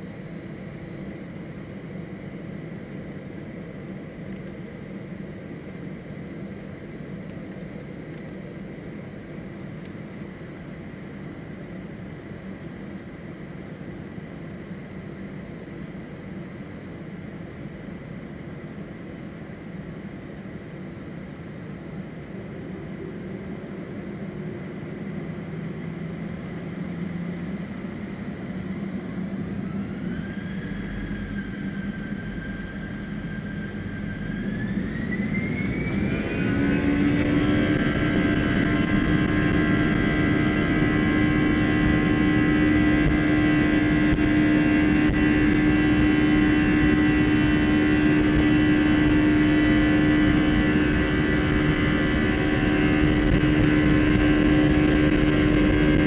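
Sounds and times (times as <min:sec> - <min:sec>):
jet engines spooling up: 0:21.7 - 0:56.0.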